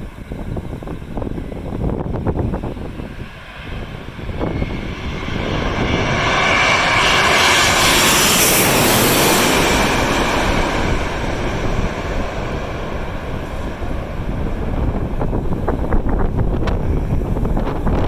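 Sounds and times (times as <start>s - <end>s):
airliner engine roar: 0.0s - 18.0s
wind buffeting microphone: 0.0s - 18.0s.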